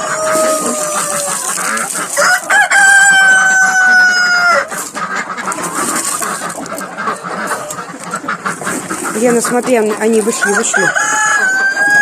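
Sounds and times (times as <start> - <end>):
rooster crowing: 0.0 - 1.4, 2.2 - 4.7, 10.4 - 12.0
chickens clucking: 0.0 - 12.0.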